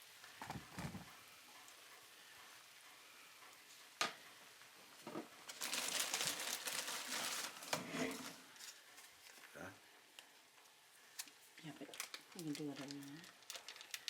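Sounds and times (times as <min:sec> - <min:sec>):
packaging crinkling and rustling: 0:05.4 - 0:09.5, 0:11.2 - 0:14.0.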